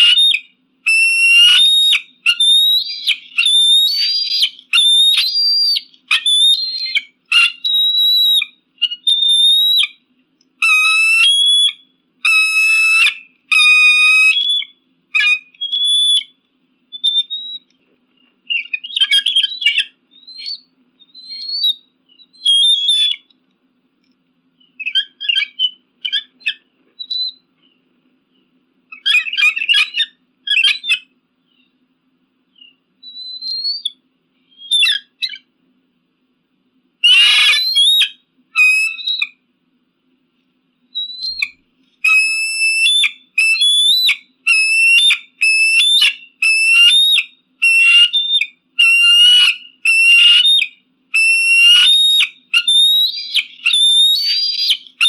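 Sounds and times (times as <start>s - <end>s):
eagle calling: 0.0s - 10.0s, 10.6s - 17.8s, 18.5s - 23.3s, 24.6s - 27.5s, 28.9s - 31.8s, 32.6s - 35.5s, 37.0s - 39.4s, 41.0s - 55.0s.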